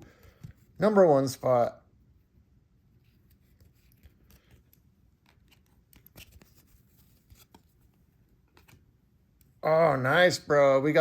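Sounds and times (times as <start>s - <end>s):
trading cards being handled: 3.0s - 9.6s.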